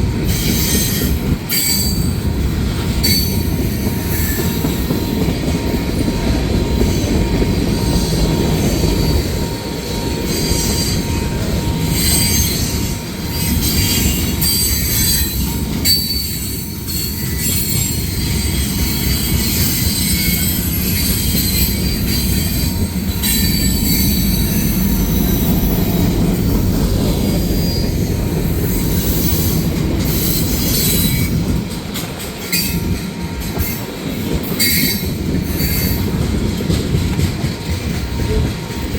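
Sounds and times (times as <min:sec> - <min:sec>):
train wheels rumbling on rail: 0:00.0 - 0:38.9
high wheel squeals: 0:00.3 - 0:02.3, 0:06.6 - 0:31.6.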